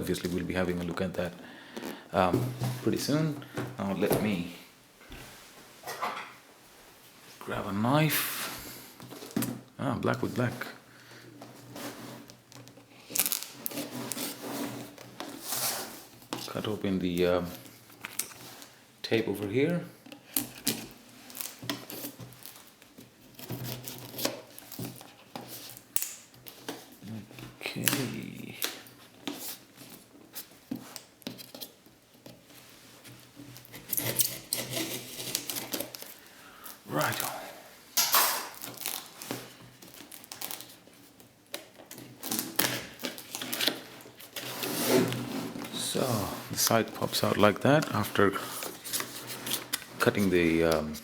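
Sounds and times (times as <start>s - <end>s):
knife slitting packing tape: 13.1s - 14.4s, 33.7s - 36.1s.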